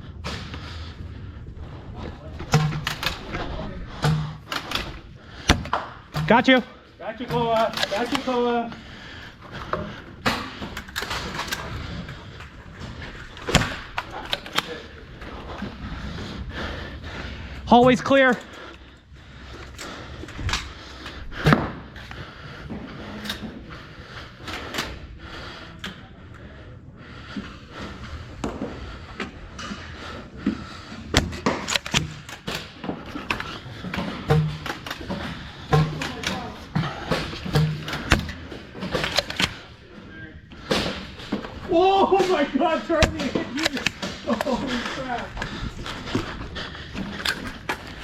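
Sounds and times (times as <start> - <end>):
darts striking walls: 2.4 - 3.3, 4.0 - 6.6, 13.4 - 14.7, 21.4 - 21.9, 31.0 - 39.7, 40.7 - 44.6.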